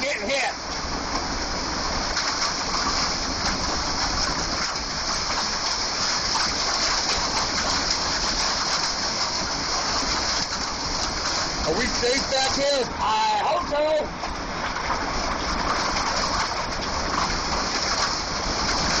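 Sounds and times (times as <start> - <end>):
heavy rain pelting down: 0.0 - 19.0
wind rumbling on microphone: 0.0 - 19.0
hailstones striking: 1.1 - 12.9.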